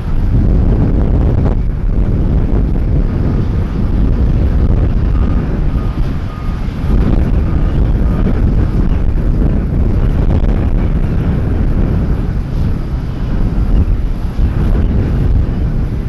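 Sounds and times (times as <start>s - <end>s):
jet engines rumbling: 0.0s - 16.0s
faint short beeps: 5.1s - 6.6s.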